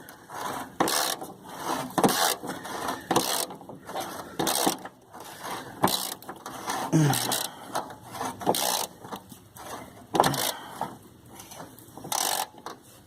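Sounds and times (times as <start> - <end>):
ratchet wrench clicking: 10.3 - 10.6, 12.1 - 12.6.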